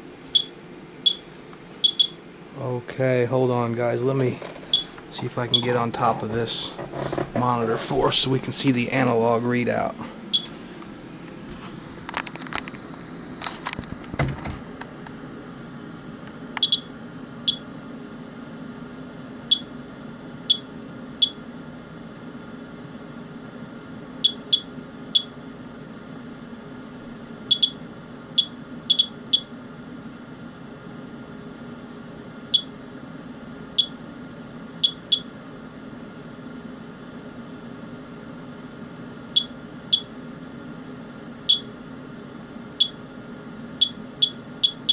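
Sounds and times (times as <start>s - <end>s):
steady low hum: 0.0s - 44.9s
geiger counter chirping: 0.3s - 1.2s, 1.8s - 2.2s, 4.7s - 5.7s, 16.6s - 16.9s, 24.3s - 25.4s, 27.5s - 27.8s, 28.4s - 29.5s, 32.5s - 32.7s, 33.8s - 34.0s, 34.8s - 35.3s, 41.5s - 41.7s, 42.8s - 43.0s, 43.8s - 44.9s
handling knocks: 4.3s - 8.1s.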